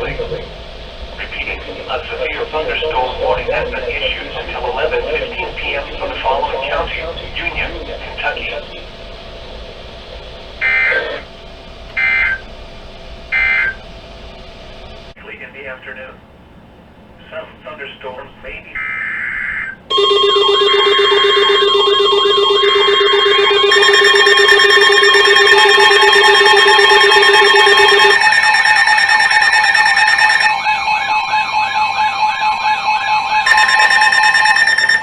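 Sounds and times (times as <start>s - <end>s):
buzzy data bursts: 0.0s - 15.2s, 18.8s - 35.0s
wavering siren-like alarm tone: 0.0s - 15.2s, 18.8s - 35.0s
steady alert tones: 10.6s - 11.3s, 19.9s - 35.0s.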